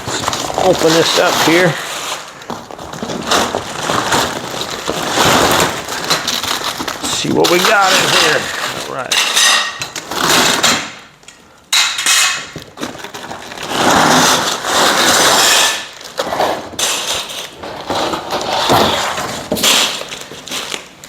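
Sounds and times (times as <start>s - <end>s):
packing rustling and scraping: 0.0s - 10.9s, 12.4s - 21.0s
parts knocking and clattering: 11.7s - 13.6s.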